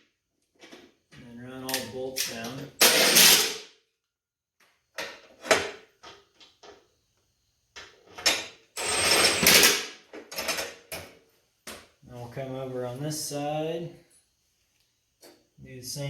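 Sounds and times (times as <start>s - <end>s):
power tool metallic clatter: 8.8s - 9.8s.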